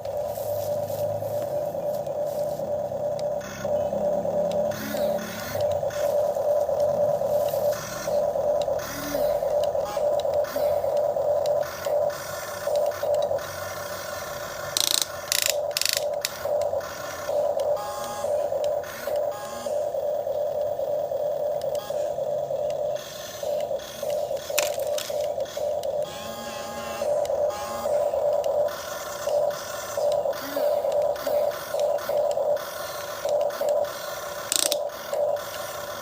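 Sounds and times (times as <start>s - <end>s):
electric motors whining: 0.0s - 36.0s
sharp scraping clicks: 14.7s - 16.8s, 23.0s - 26.0s, 30.9s - 35.7s.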